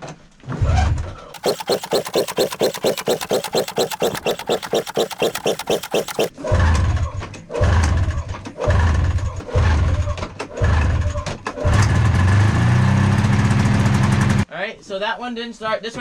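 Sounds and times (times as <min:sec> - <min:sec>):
snowmobile engine cranking: 0:01.4 - 0:06.3.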